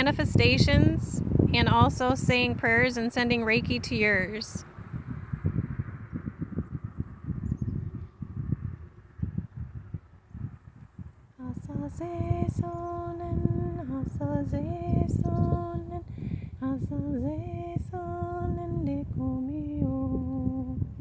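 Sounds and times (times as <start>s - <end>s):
woman singing wordless held notes: 0.0s - 4.6s, 11.4s - 20.9s
low rumble: 0.0s - 21.0s.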